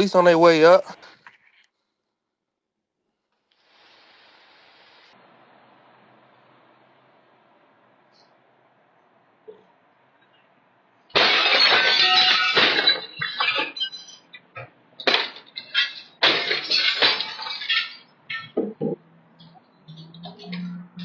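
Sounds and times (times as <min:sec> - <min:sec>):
loud crashing and smashing: 0:11.1 - 0:14.0, 0:15.0 - 0:18.4.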